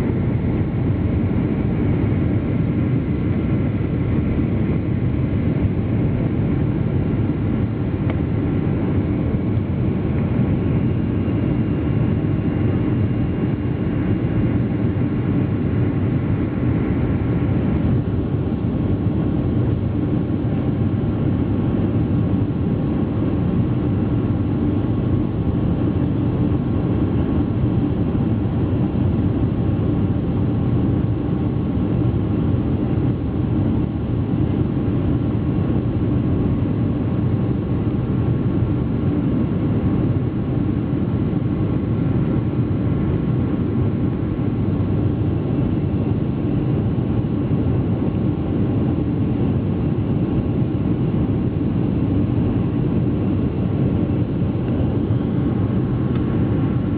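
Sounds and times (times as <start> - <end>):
jet engines roaring: 39.4 - 56.9.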